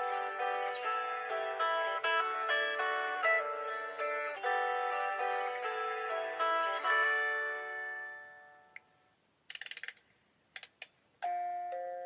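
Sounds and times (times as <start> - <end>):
rattle of sharp clicks: 9.5 - 11.0
plucked-string phone ringtone: 11.2 - 12.0.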